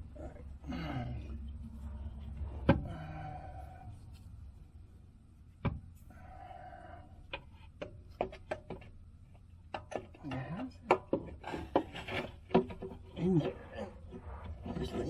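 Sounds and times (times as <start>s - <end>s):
tools clicking and knocking: 7.3s - 15.0s.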